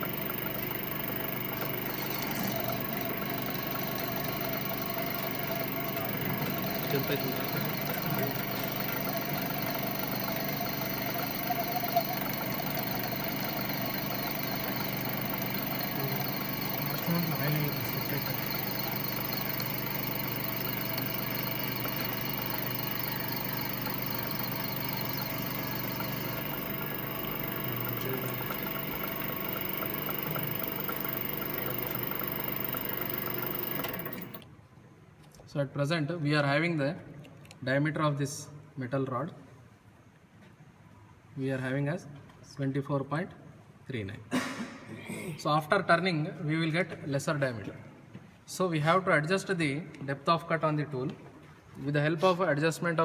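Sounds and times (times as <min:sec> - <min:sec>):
lathe running: 0:00.0 - 0:34.4.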